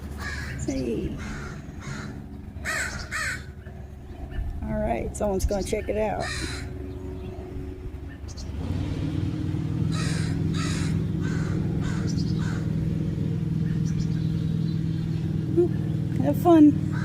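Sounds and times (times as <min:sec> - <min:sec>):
engine drone: 0:00.0 - 0:17.0
crows cawing: 0:00.1 - 0:04.5, 0:06.2 - 0:06.9, 0:09.8 - 0:13.1.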